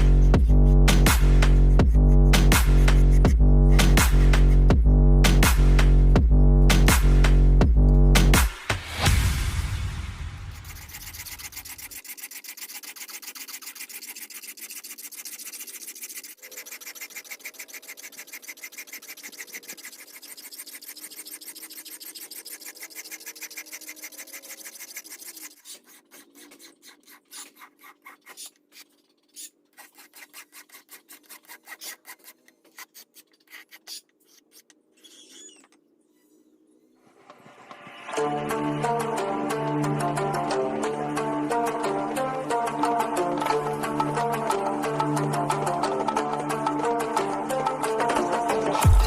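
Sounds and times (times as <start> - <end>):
file rasping on iron blade: 2.4 - 4.7, 10.4 - 35.6.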